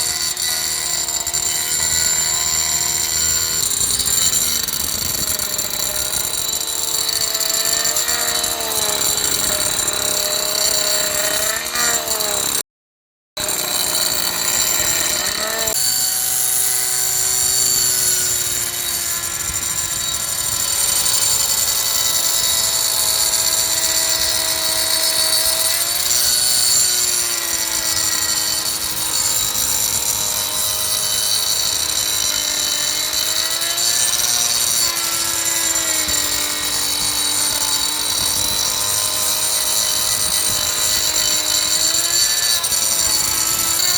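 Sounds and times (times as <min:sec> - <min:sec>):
angle grinder cutting wood: 0:00.0 - 0:12.6, 0:13.4 - 0:43.9.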